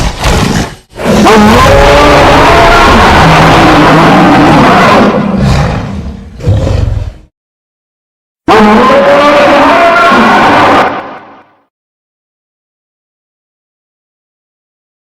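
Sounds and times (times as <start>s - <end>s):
monster roar: 0.0s - 7.3s, 8.5s - 11.3s.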